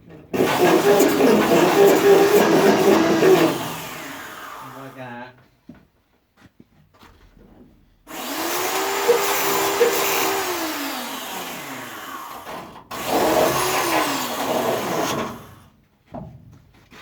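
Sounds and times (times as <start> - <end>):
electric grinder on metal: 0.4 - 5.0, 8.1 - 15.6.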